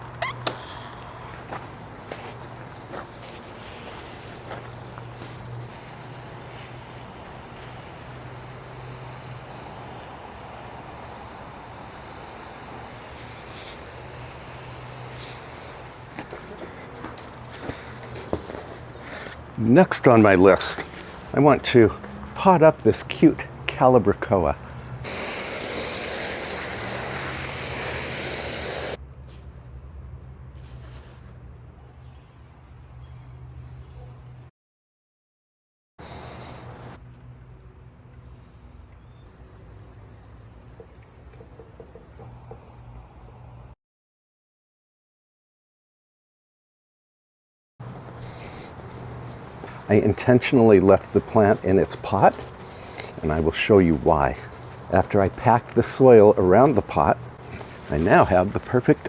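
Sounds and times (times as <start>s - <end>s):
water spraying hiss: 2.2s - 21.6s, 25.0s - 29.0s, 36.0s - 37.0s, 47.8s - 55.8s, 57.0s - 59.0s.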